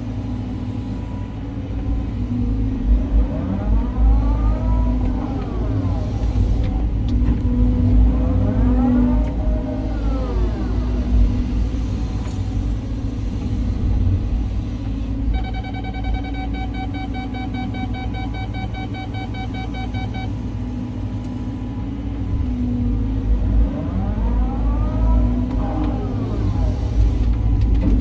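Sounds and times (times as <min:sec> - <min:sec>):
excavator diesel engine rumbling: 0:00.0 - 0:28.0
rapid electronic warning alarm beeps: 0:15.3 - 0:20.4.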